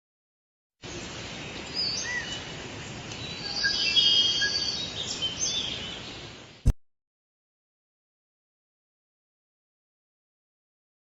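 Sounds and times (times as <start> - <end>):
outdoor background hiss: 0.8 - 6.8
birds chirping and whistling: 0.9 - 2.6, 3.2 - 6.7.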